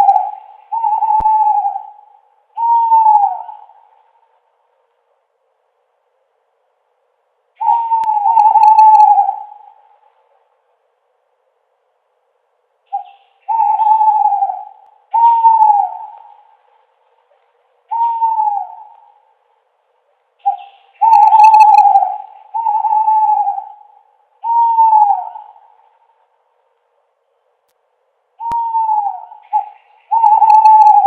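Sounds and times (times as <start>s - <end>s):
owl hooting: 0.0s - 4.4s, 7.6s - 10.3s, 12.9s - 19.4s, 20.4s - 26.4s, 28.4s - 31.0s.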